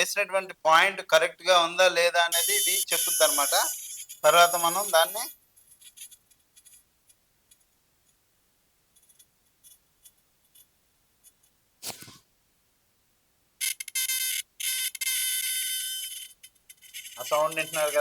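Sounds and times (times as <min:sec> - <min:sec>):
electronic device beep: 0:02.3 - 0:05.3, 0:13.6 - 0:18.0.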